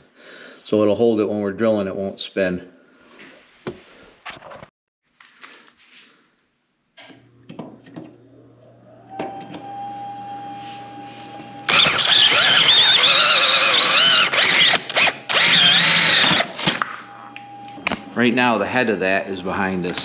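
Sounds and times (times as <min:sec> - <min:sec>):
power drill whine: 0:08.8 - 0:18.5
drill bit squealing on metal: 0:11.7 - 0:16.5
drill handling clicks: 0:11.7 - 0:16.9.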